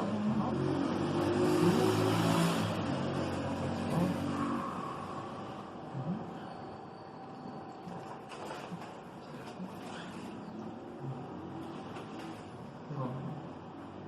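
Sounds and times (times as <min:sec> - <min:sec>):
vehicle engine revving: 0:00.0 - 0:05.8.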